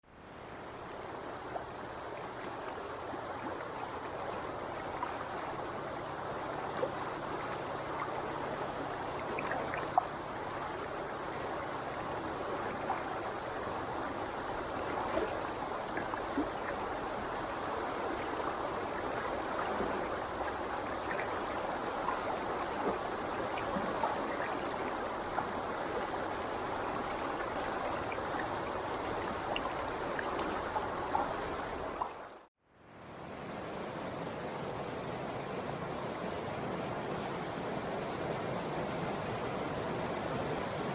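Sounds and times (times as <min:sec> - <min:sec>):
river water rushing and gurgling: 0:00.1 - 0:40.9
small splashes and plinks: 0:09.2 - 0:10.6.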